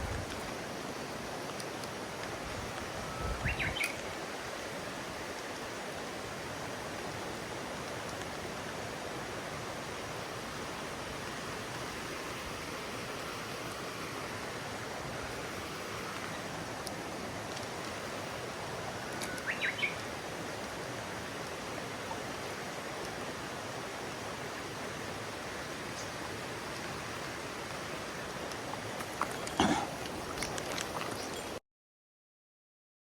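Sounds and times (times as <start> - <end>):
stream water rushing: 0.0 - 31.6
bird chirps: 3.1 - 4.0, 19.3 - 20.0.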